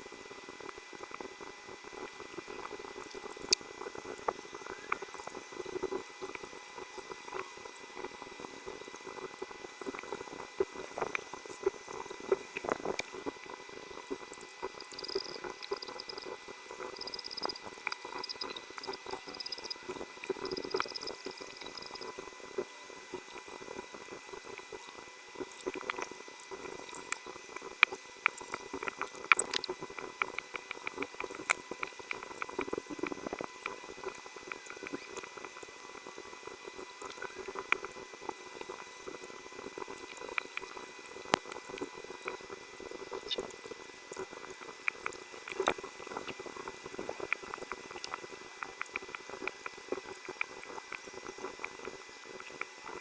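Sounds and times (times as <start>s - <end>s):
faint steady whine: 0.0s - 53.0s.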